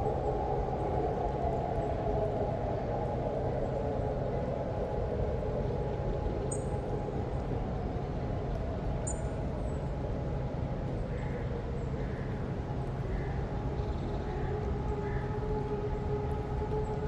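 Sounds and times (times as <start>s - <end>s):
constant low rumble: 0.0s - 17.0s
distant electronic sirens: 13.5s - 17.0s.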